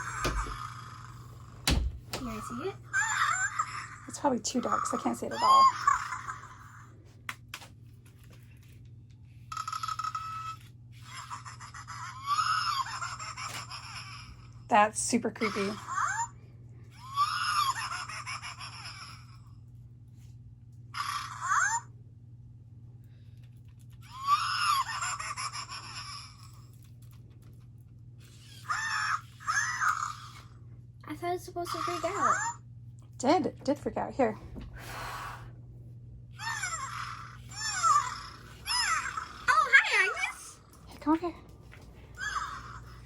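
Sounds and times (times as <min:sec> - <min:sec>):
steady low hum: 0:00.0 - 0:43.0
creepy toy voice: 0:36.4 - 0:40.6.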